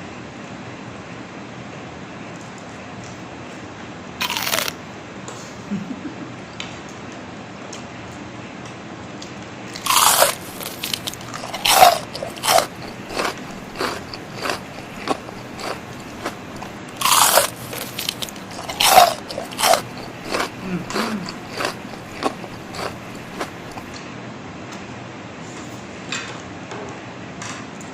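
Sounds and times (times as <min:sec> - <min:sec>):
chewing: 0:04.2 - 0:04.8, 0:09.7 - 0:24.0
crunchy bites into fried chicken: 0:04.2 - 0:04.8, 0:09.8 - 0:24.0.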